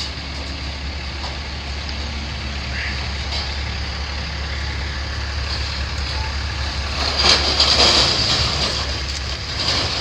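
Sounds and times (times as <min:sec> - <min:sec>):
diesel machinery droning: 0:00.0 - 0:10.0
rough scraping noise: 0:05.4 - 0:10.0.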